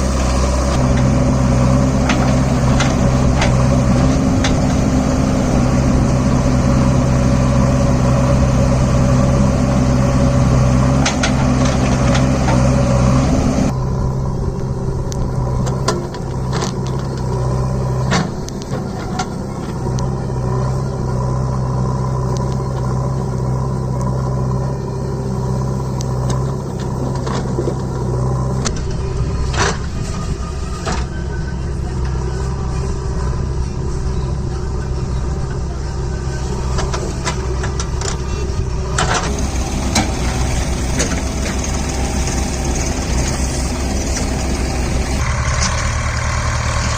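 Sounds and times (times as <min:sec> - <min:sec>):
heavy diesel engine running: 0:00.0 - 0:46.9.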